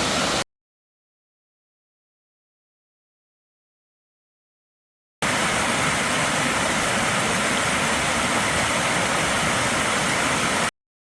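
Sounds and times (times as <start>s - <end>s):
stream water rushing: 0.0s - 0.4s, 5.2s - 10.7s.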